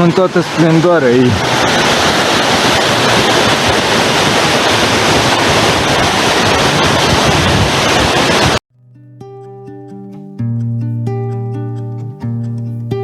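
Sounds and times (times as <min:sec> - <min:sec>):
waterfall rushing: 0:00.0 - 0:08.6.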